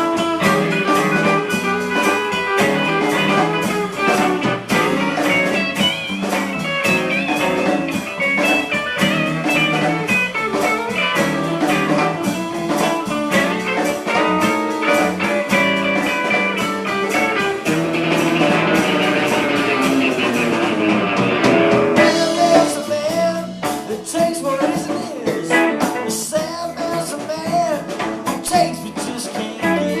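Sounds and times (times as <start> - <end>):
blues-rock guitar: 0.0 - 30.0
steady drum beat: 0.0 - 30.0.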